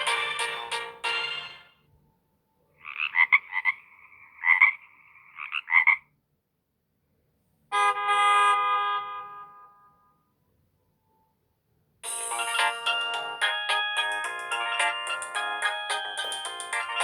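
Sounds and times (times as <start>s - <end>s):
buzzy pulsing ringtone: 0.0s - 1.6s, 12.0s - 17.0s
sustained chord-like ringtone: 0.0s - 1.8s, 12.0s - 17.0s.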